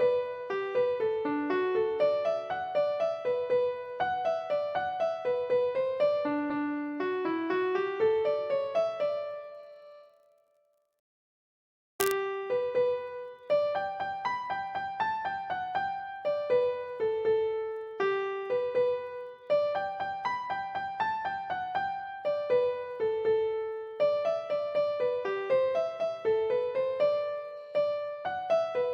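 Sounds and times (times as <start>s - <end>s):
click: 12.0s - 12.2s.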